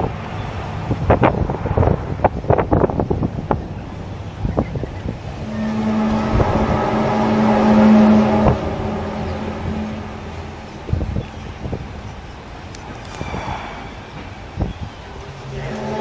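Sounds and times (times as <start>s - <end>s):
background rumble: 0.0s - 16.0s
loud low droning hum: 3.8s - 16.0s.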